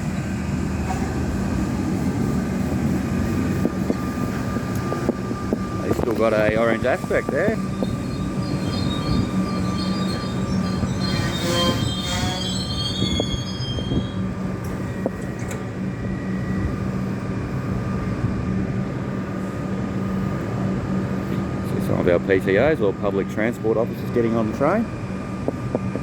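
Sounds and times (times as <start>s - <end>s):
train electrical hum: 0.0s - 26.0s
train brakes squealing: 4.0s - 16.9s.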